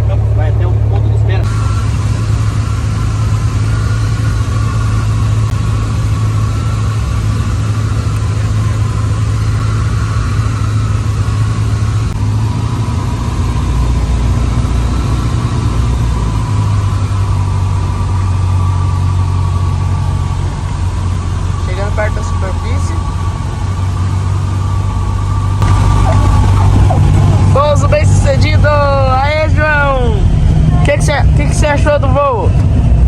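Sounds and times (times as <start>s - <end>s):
airplane engine drone in cabin: 0.0s - 33.0s.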